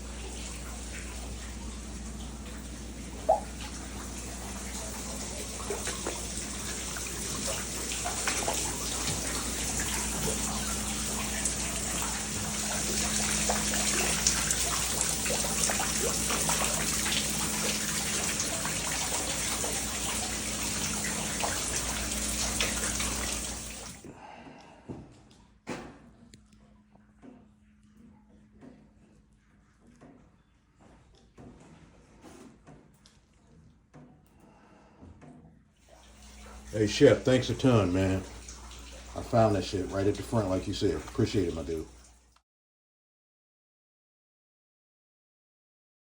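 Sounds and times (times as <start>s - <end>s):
water rushing from burst pipe: 0.0s - 24.0s, 35.9s - 42.1s.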